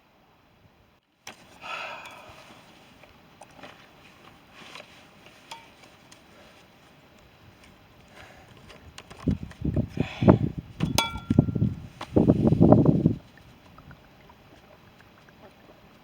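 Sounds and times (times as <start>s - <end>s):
faint steady hiss: 0.0s - 16.0s
rustling: 1.3s - 13.8s.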